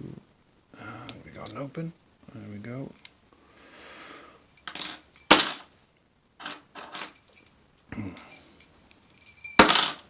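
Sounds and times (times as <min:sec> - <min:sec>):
padlock metal clinking: 0:04.5 - 0:05.6, 0:06.4 - 0:07.6, 0:08.2 - 0:10.0.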